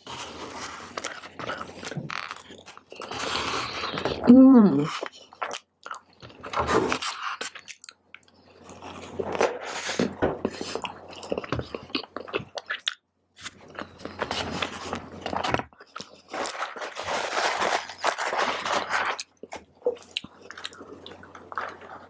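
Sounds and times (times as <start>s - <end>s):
close chewing with mouth clicks: 4.9s - 9.2s, 10.4s - 16.3s, 19.2s - 22.0s.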